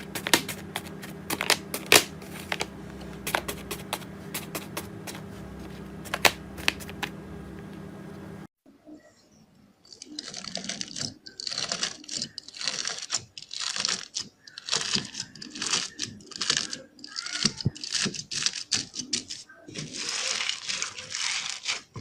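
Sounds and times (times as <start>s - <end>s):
slime crackling and popping: 0.0s - 4.8s, 10.0s - 22.0s.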